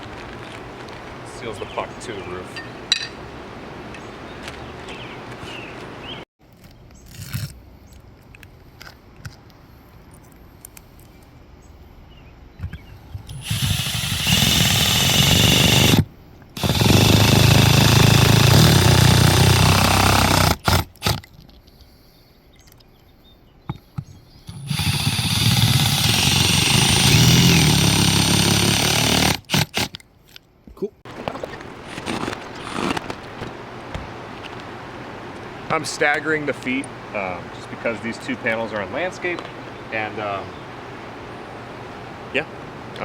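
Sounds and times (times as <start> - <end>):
power driver driving screws: 13.3 - 21.2, 24.5 - 30.0.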